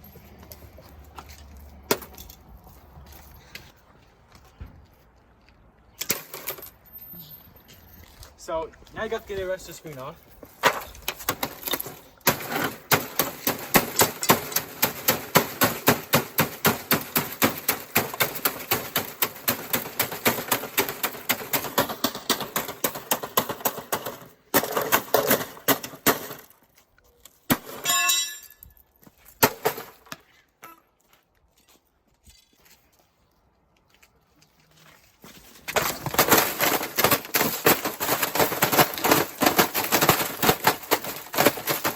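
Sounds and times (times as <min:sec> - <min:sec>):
ringing clang: 0:27.8 - 0:28.7.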